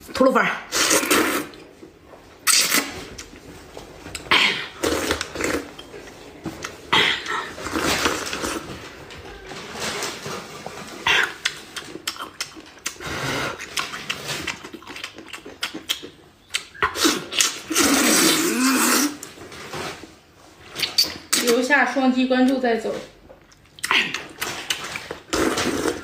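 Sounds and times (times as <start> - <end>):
wet chewing and slurping: 0.7 - 1.7, 2.4 - 3.5, 4.1 - 8.7, 10.9 - 19.3, 23.4 - 26.0.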